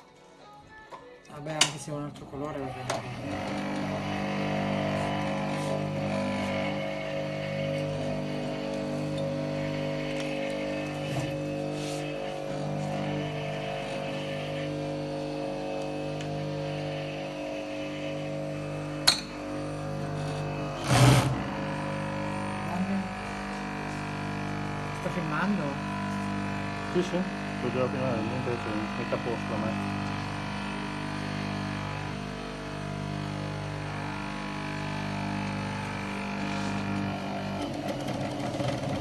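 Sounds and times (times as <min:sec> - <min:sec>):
sewing machine motor humming: 0:02.3 - 0:39.0
sewing machine burst: 0:20.8 - 0:21.4.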